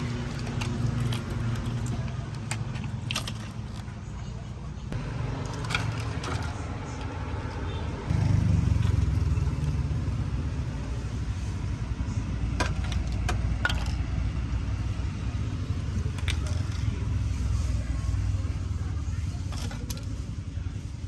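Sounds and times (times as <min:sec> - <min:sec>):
low engine rumble: 0:00.0 - 0:21.0.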